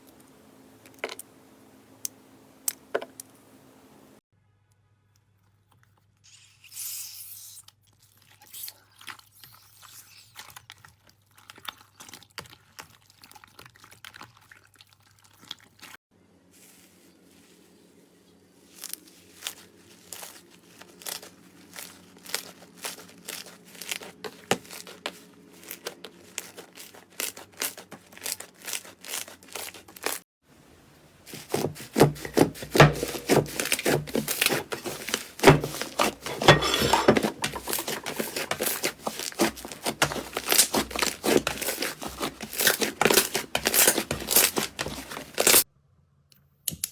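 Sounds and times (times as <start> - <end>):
slime squished by hand: 37.1 - 45.6.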